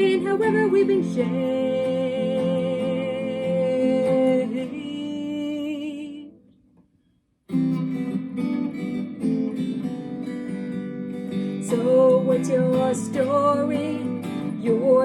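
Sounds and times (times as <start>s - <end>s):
person singing with vibrato: 0.0s - 6.4s, 11.6s - 15.0s
acoustic guitar strumming: 0.0s - 6.6s, 7.5s - 15.0s.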